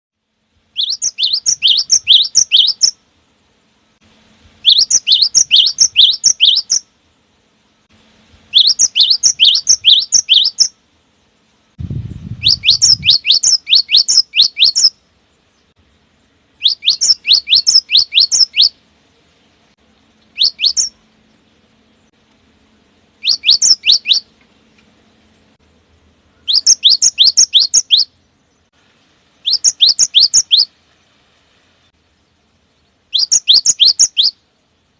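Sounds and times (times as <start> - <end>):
bird singing high whistled song: 0.7 - 3.0, 4.6 - 6.9, 8.5 - 10.8, 12.0 - 15.8, 16.6 - 18.8, 20.2 - 22.1, 23.2 - 24.4, 26.3 - 28.7, 29.4 - 30.7, 32.8 - 34.9
low rumble: 11.7 - 13.1.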